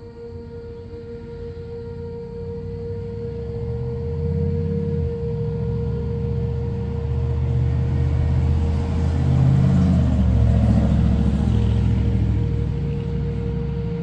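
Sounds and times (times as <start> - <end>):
steady hum: 0.0 - 14.0.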